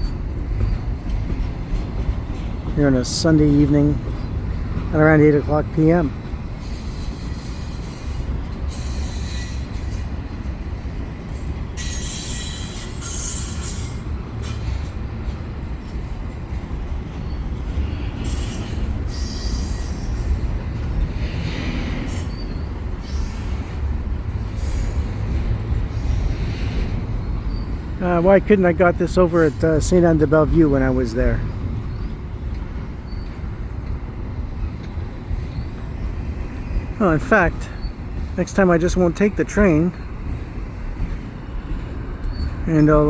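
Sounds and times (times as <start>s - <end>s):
steel wheels rumbling on rails: 0.0s - 43.0s
wheel squeal: 6.6s - 10.4s, 11.6s - 14.8s, 18.2s - 20.6s, 22.1s - 25.2s, 42.1s - 42.7s.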